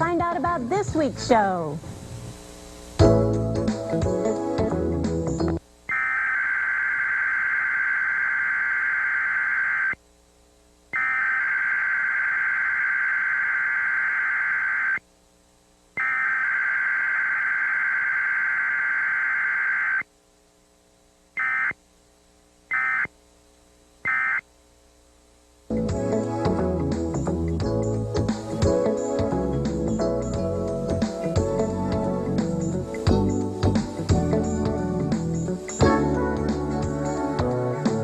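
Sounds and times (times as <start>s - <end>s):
alert data tone bursts: 5.9s - 10.0s, 11.0s - 15.0s, 16.0s - 20.1s, 21.4s - 21.8s, 22.7s - 23.1s, 24.1s - 24.4s.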